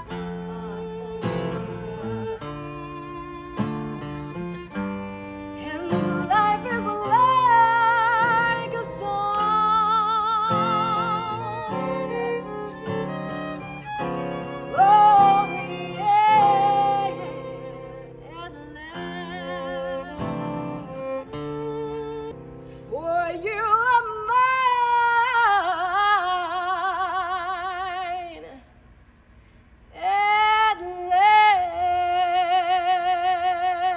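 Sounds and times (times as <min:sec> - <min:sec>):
operatic soprano singing: 0:00.0 - 0:03.0, 0:05.5 - 0:20.8, 0:22.8 - 0:28.6, 0:30.0 - 0:33.9
orchestral strings: 0:00.0 - 0:22.4.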